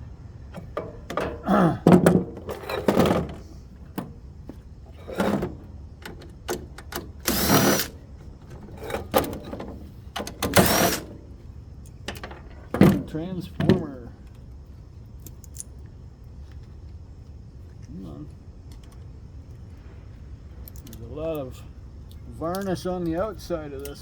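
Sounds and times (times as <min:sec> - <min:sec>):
sheet metal clanks and knocks: 0:00.6 - 0:04.2
metallic scraping: 0:04.8 - 0:05.8, 0:07.2 - 0:08.0, 0:10.5 - 0:11.1.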